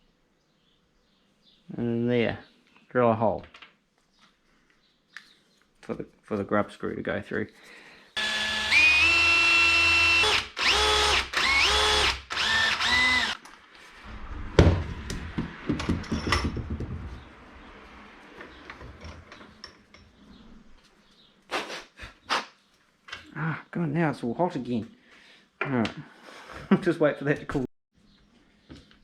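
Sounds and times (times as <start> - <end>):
electric drill whining: 8.2 - 13.4.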